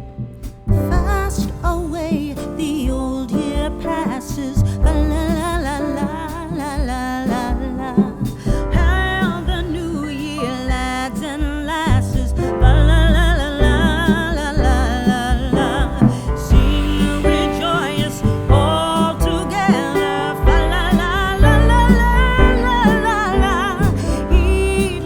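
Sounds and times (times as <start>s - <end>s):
band with strong bass: 0.0s - 25.0s
singer with heavy vibrato: 6.8s - 25.0s.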